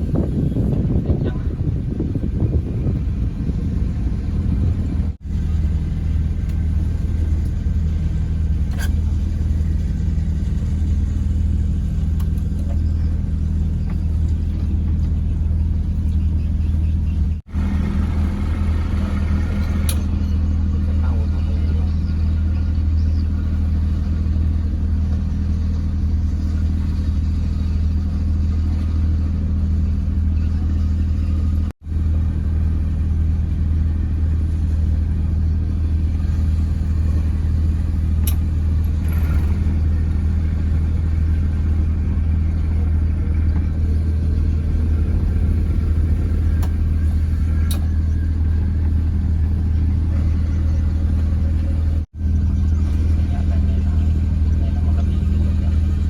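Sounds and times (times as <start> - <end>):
boat engine droning: 0.0 - 56.0.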